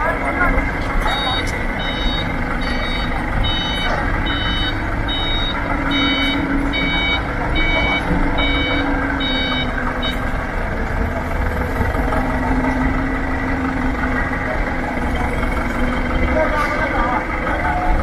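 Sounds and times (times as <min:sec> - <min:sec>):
diesel engine running: 0:00.0 - 0:18.0
reversing alarm beeping: 0:00.2 - 0:10.6.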